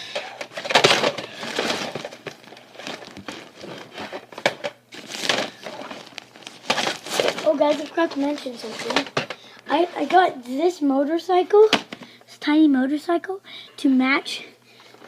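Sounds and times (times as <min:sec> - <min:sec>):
plastic toys rustling and clattering: 0:00.0 - 0:10.3.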